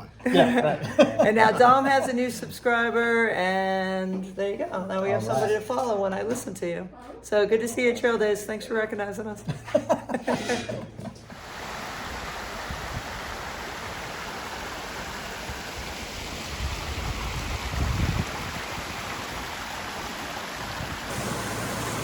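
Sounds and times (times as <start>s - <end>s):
brook rushing over rocks: 11.4s - 22.0s.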